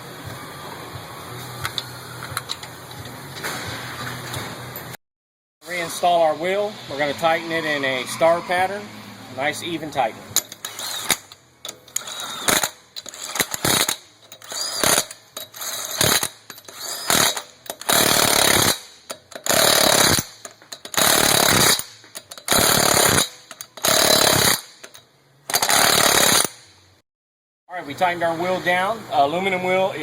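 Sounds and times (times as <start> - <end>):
impact wrench hammering: 10.4 - 26.8.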